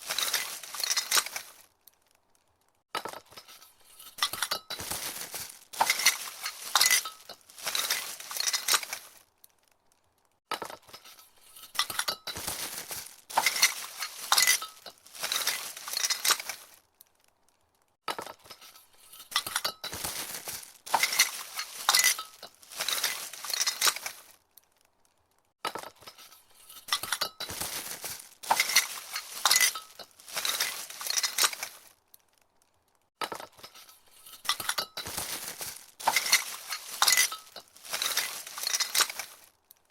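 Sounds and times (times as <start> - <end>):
glass ornaments clinking in box: 0.0 - 1.6, 3.0 - 9.1, 11.0 - 16.7, 18.2 - 24.3, 25.8 - 31.8, 33.2 - 39.4.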